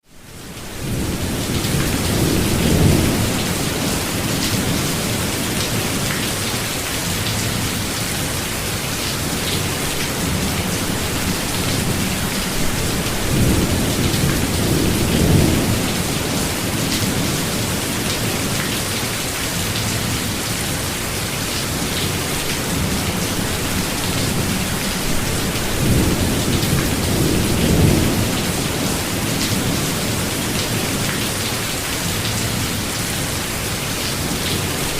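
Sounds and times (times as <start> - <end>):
heavy rain falling: 0.1 - 34.9
rolling thunder: 10.2 - 18.5, 22.7 - 30.8.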